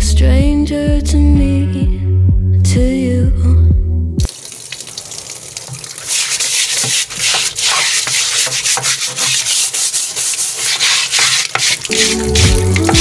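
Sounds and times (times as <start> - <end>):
scrubbing strokes: 5.9 - 13.0.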